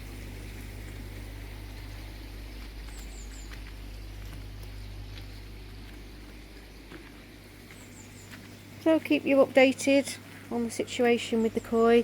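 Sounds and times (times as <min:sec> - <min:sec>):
steady low hum: 0:00.0 - 0:12.0
small bird chirping: 0:02.5 - 0:04.1, 0:06.3 - 0:10.1.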